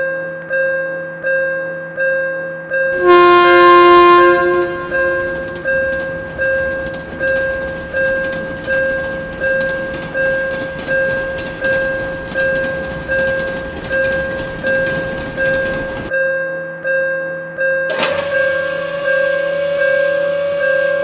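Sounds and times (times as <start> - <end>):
railway crossing bell clanging: 2.8 - 16.1, 17.9 - 21.0
passing train: 2.8 - 16.3, 17.9 - 21.0.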